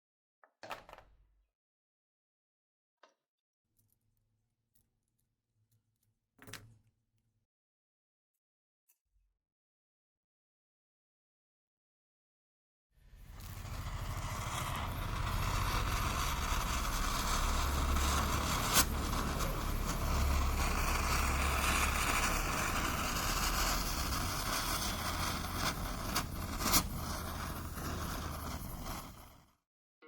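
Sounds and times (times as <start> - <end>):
firework fizzing hiss: 13.1 - 29.5.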